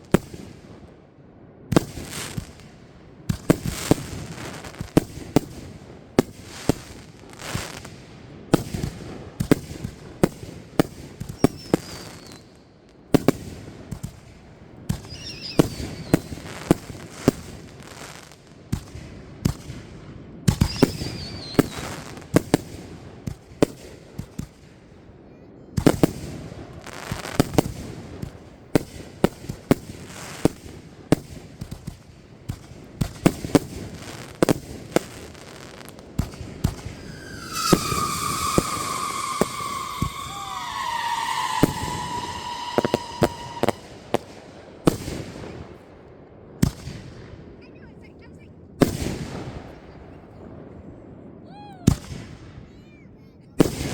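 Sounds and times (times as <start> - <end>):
fireworks bangs and booms: 0.0 - 47.6, 48.6 - 52.8, 53.5 - 53.9
firework whistles falling in pitch: 11.3 - 12.4, 15.1 - 16.3, 20.6 - 21.9, 36.7 - 44.3.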